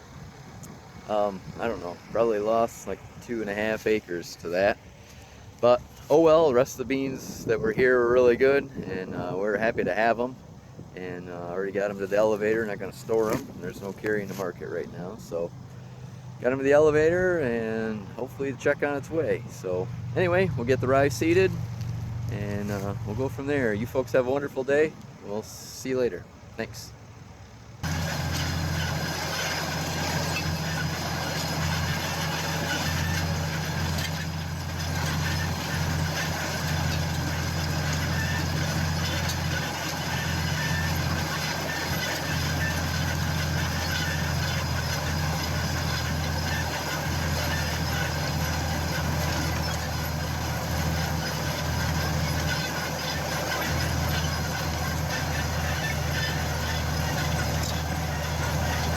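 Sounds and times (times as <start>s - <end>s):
tractor engine droning: 0.0s - 58.9s
mechanical rattle: 27.8s - 58.9s.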